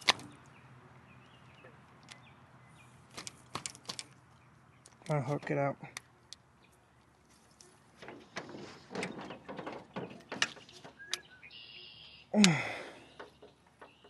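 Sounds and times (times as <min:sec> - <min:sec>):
clicks scrapes and knocks of tackle: 0:03.1 - 0:04.2, 0:07.0 - 0:11.2.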